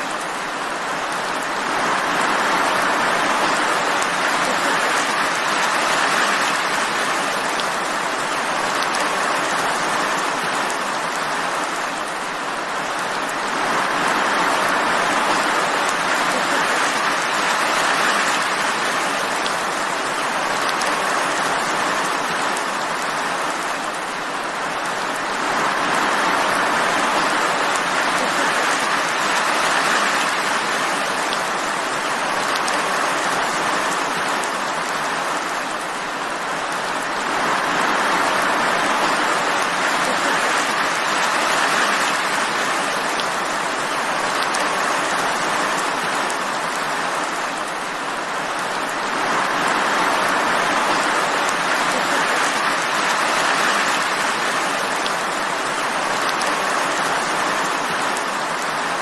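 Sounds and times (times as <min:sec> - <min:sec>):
steady rain falling: 0:00.0 - 0:59.0.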